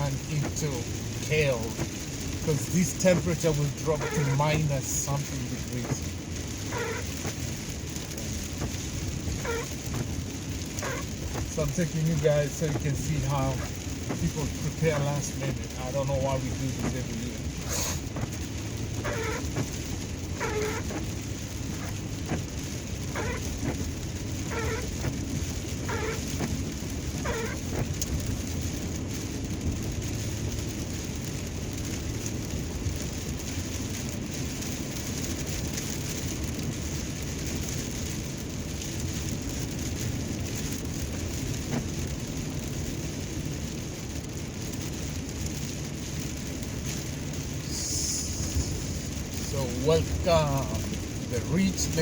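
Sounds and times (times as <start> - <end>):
low rumble: 0.0 - 35.2, 38.0 - 52.0
steady rain: 0.0 - 52.0
squeaky chirps: 4.0 - 4.5, 6.7 - 7.1, 9.4 - 9.8, 10.8 - 11.1, 19.0 - 19.7, 20.4 - 21.1, 23.1 - 23.8, 24.4 - 25.2, 25.9 - 26.4, 27.2 - 27.8.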